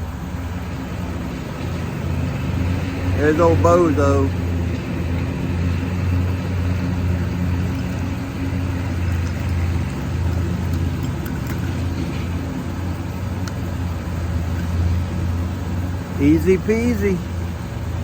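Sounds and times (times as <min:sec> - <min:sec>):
engine humming steadily: 0:00.0 - 0:18.0
faint ticks: 0:07.5 - 0:12.6.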